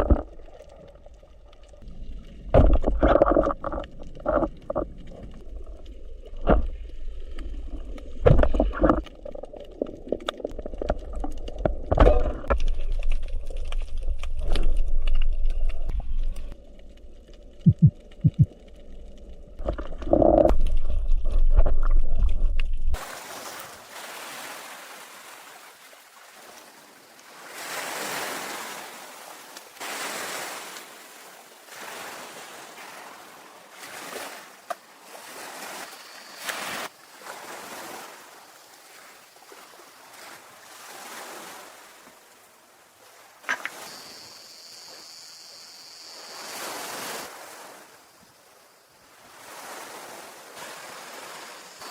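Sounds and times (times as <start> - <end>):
low rumble: 1.1 - 23.0
ocean waves breaking on a beach: 23.0 - 51.9.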